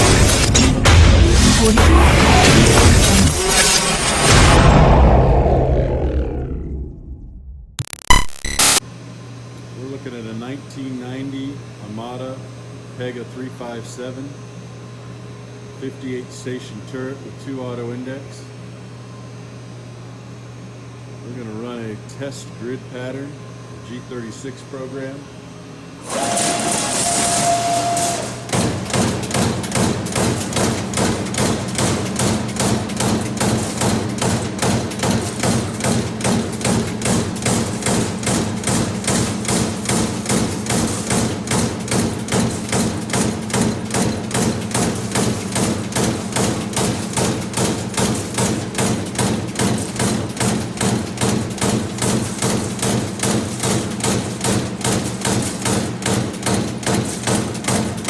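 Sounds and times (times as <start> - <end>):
punch press strokes: 0.0 - 6.6
machine hum: 0.0 - 11.8.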